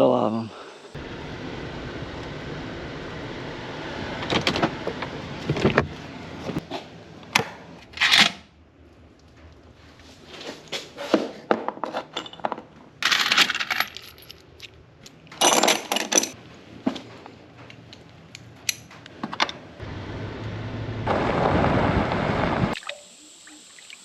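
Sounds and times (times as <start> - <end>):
metal clinking: 12.0 - 14.8, 15.4 - 16.4
steady hiss: 22.3 - 24.0.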